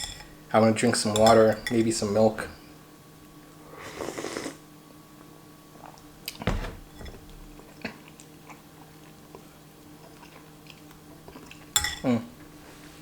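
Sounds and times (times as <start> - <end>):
person chewing noodles: 7.7 - 11.6.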